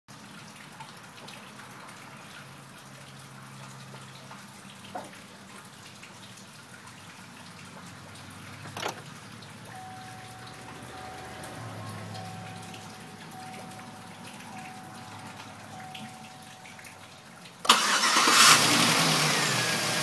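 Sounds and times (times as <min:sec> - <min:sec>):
engine hum: 0:07.7 - 0:20.0
fast ticking from engine: 0:17.7 - 0:20.0.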